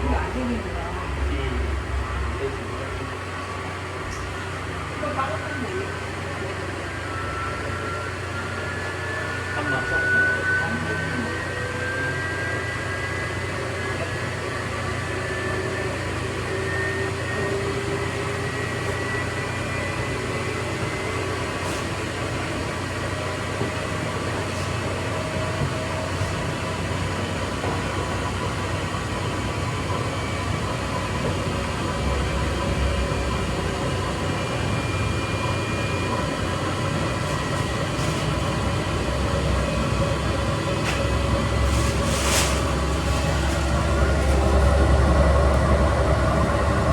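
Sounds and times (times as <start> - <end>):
washing machine humming: 0.0 - 10.0, 11.4 - 46.9
thin rising whine: 5.5 - 13.8, 29.2 - 46.9.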